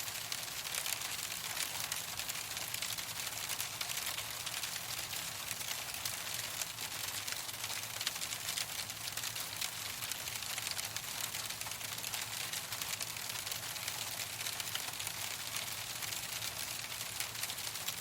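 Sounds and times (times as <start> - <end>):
hailstones on a hard surface: 0.1 - 18.0.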